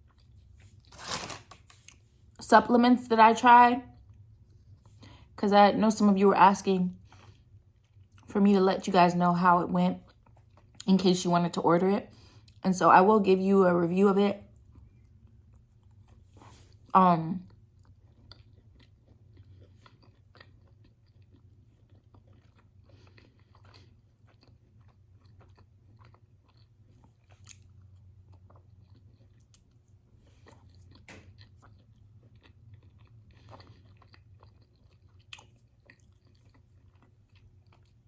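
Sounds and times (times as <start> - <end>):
person chewing: 0.0 - 2.2, 7.0 - 8.3, 10.0 - 10.9, 14.4 - 16.9, 17.5 - 38.0
low steady hum: 0.0 - 38.0.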